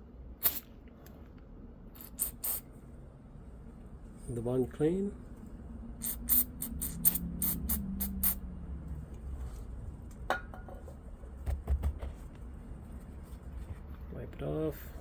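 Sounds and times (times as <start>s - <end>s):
aerosol spray squirts: 0.4s - 0.7s, 2.0s - 2.6s, 6.0s - 8.4s.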